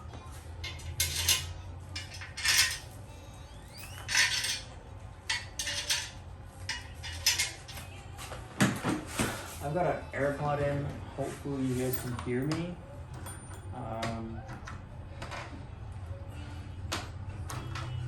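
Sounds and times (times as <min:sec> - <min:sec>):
metal parts and tools clinking: 0:00.6 - 0:03.0, 0:03.7 - 0:07.9, 0:11.9 - 0:15.5.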